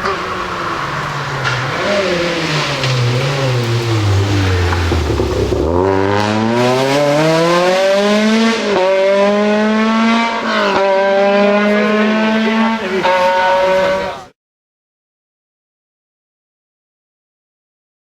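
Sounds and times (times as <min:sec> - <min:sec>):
rally car engine revving: 0:00.0 - 0:14.3.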